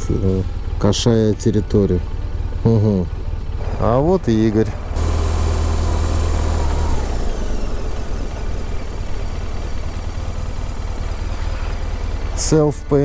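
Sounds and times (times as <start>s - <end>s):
motorcycle engine slowing down: 0.0s - 13.0s.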